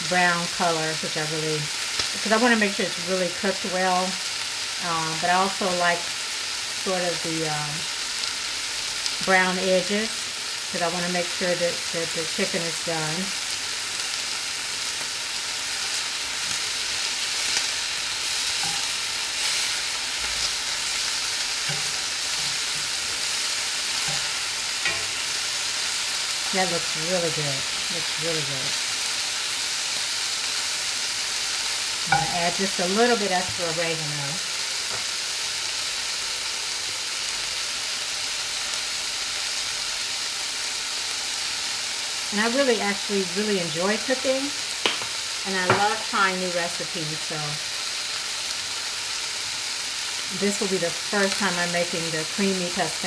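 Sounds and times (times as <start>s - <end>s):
chicken sizzling in a pan: 0.0s - 53.0s
faint pan knocks: 32.1s - 32.4s, 44.8s - 45.9s.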